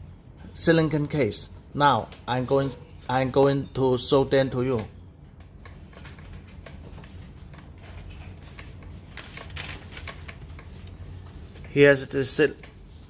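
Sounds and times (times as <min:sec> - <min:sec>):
packaging rustling: 0:06.0 - 0:11.7.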